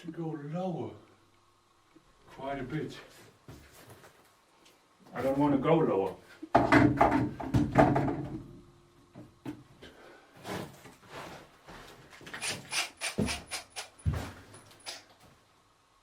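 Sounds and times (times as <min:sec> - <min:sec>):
high squeaks: 0:12.3 - 0:15.1
tools clicking and knocking: 0:12.4 - 0:15.1.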